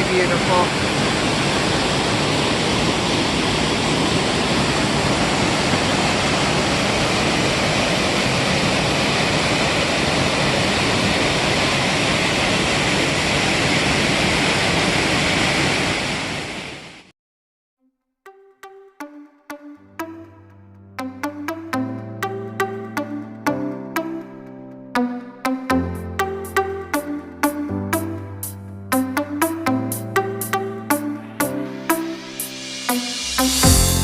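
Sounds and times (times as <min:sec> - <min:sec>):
waterfall rushing: 0:00.0 - 0:16.7.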